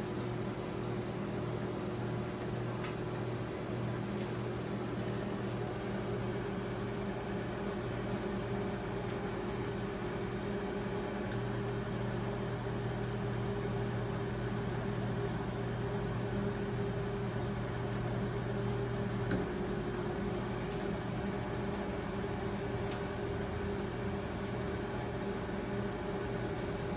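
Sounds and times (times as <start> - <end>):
microwave oven humming: 0.0 - 26.9.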